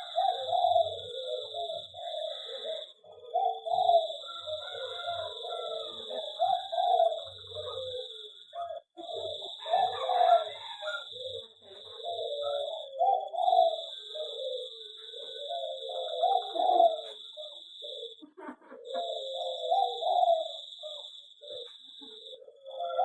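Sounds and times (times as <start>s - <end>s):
doves cooing: 0.0s - 23.0s.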